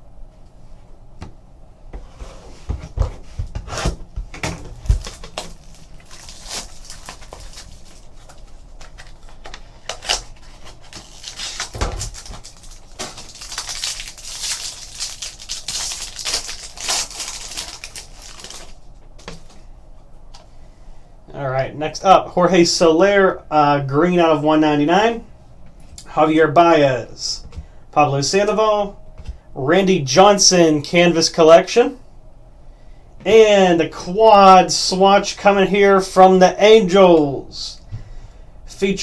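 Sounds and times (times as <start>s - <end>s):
trading cards crinkling and rustling: 2.7s - 19.7s.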